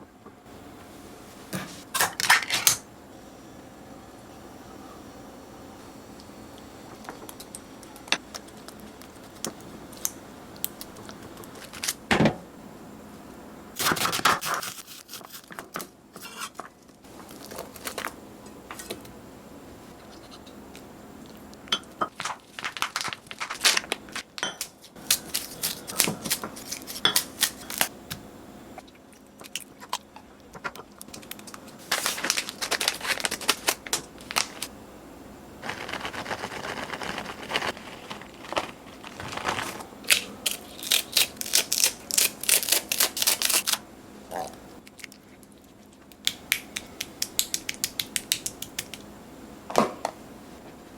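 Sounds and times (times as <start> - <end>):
scraping tearing and rustling: 35.6 - 43.8.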